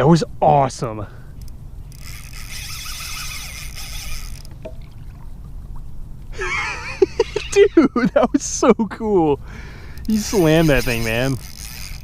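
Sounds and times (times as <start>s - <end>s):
fishing reel whirring: 1.3s - 4.6s, 9.8s - 12.0s.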